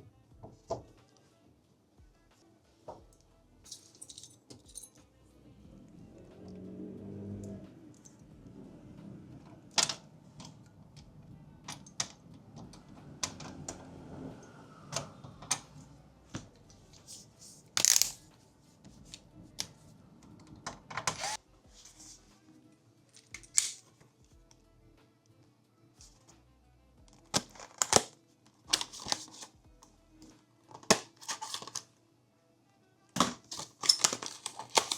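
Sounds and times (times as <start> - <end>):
faint background music: 0.0 - 34.9
plastic and metal parts clicking: 17.8 - 18.2, 27.2 - 29.5, 30.7 - 31.8, 33.2 - 34.9
rustling scrapes: 21.2 - 22.4.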